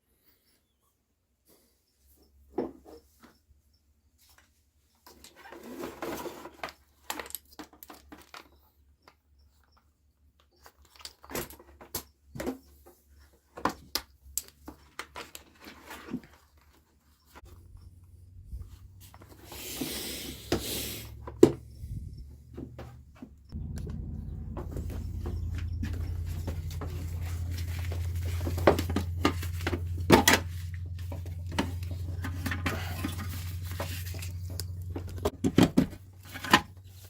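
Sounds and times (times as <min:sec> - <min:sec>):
low hum: 0:21.1 - 0:37.0
tools and parts rattling: 0:23.6 - 0:37.0.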